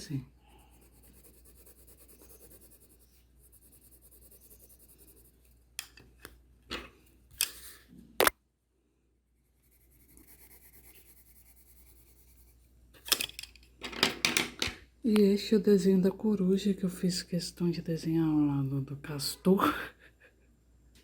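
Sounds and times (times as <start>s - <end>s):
drawing tool scratching on paper: 0.6s - 5.4s, 9.6s - 12.6s.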